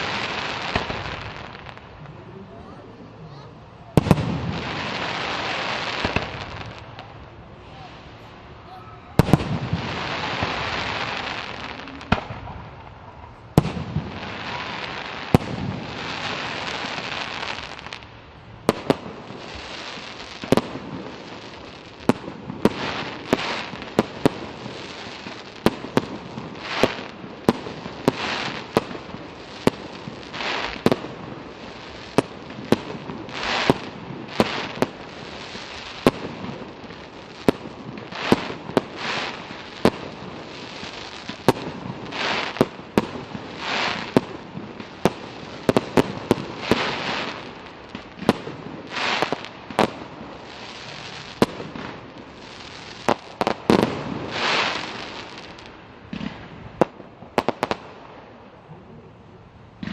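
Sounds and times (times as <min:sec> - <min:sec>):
fireworks bursting bangs: 0:00.0 - 0:58.9.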